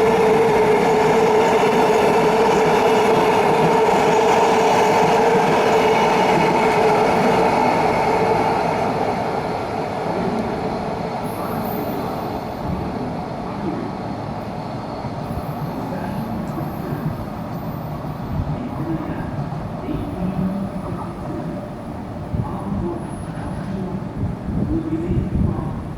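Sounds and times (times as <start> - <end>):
freight train rumbling past: 0.0 - 25.9
ringing tone from train wheels: 11.2 - 12.8.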